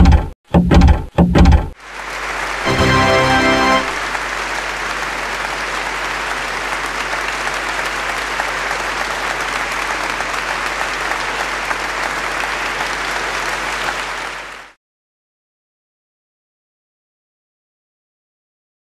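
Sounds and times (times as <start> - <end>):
audience applauding: 1.8 - 14.8.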